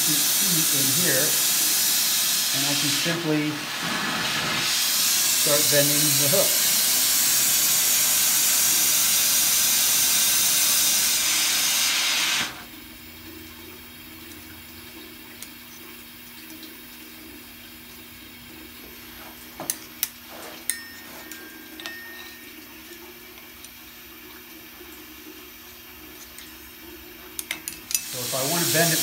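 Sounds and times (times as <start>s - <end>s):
gas flame hissing: 0.0s - 12.7s, 27.9s - 29.0s.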